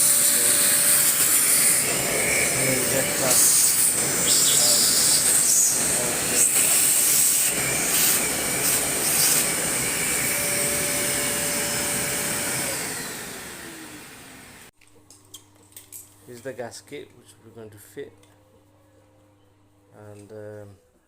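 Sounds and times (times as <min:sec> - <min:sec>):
vacuum blower rushing air: 0:00.0 - 0:14.7.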